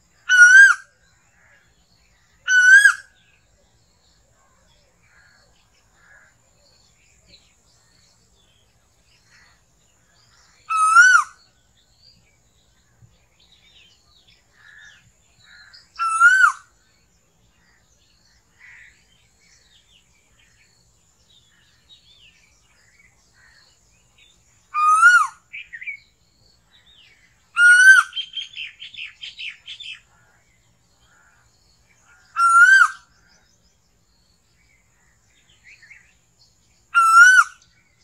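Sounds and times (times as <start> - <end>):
bird rising calls: 0.3 - 0.8, 10.7 - 11.4, 15.5 - 16.7, 24.7 - 25.8, 27.6 - 30.0, 32.2 - 33.1, 37.0 - 37.6.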